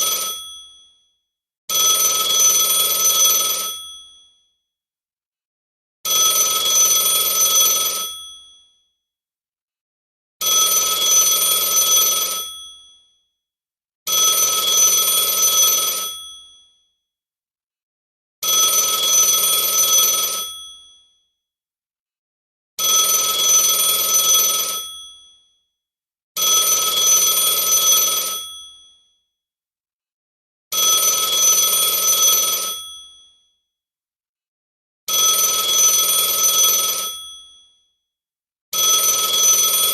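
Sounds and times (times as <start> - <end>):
telephone ringing: 0.0 - 0.8, 6.2 - 8.3, 10.6 - 12.6, 18.4 - 20.6, 26.6 - 28.7.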